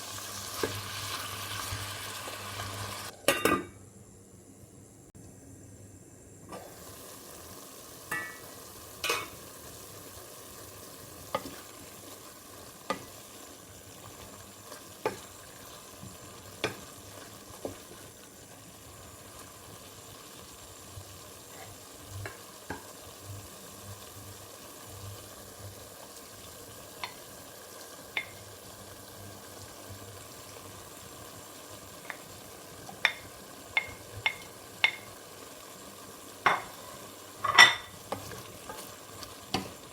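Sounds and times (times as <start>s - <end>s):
food sizzling in a pan: 0.0s - 3.8s, 6.2s - 39.9s.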